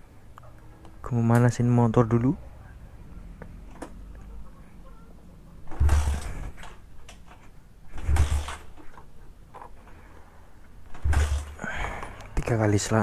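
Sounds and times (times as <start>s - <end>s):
motorcycle kick-starter thumps: 10.9s - 11.6s.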